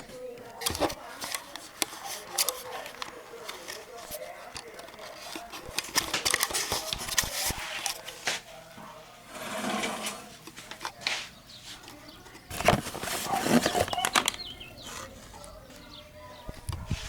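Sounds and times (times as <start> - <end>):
short scraping sounds: 9.3 - 10.3.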